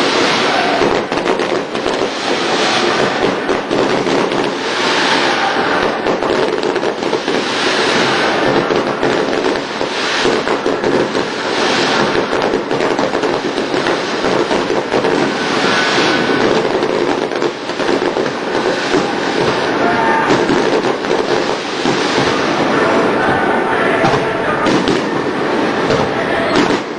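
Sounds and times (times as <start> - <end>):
fireworks crackling: 0.0 - 26.9.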